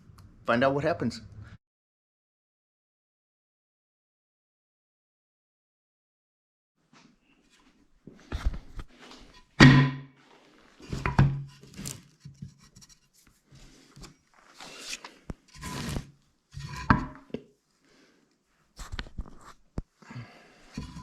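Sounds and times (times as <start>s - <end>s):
wood scraping: 7.5s - 17.4s, 20.7s - 21.0s
wooden boards knocking: 9.6s - 10.0s.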